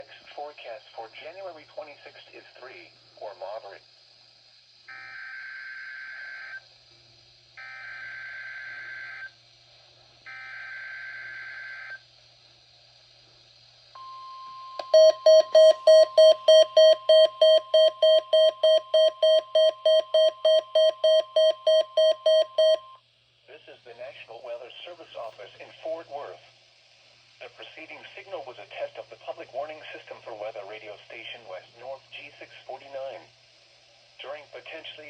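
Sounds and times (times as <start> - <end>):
steady warning alarm tone: 4.9 - 6.6, 7.6 - 9.4, 10.3 - 12.0, 14.0 - 23.0
loud rapid beeping: 14.8 - 23.0.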